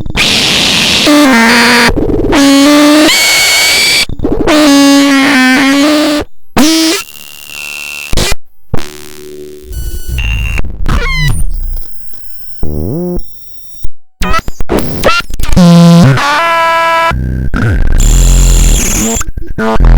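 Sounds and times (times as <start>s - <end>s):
synthesizer buzzing tones: 9.0s - 13.3s, 14.2s - 19.9s.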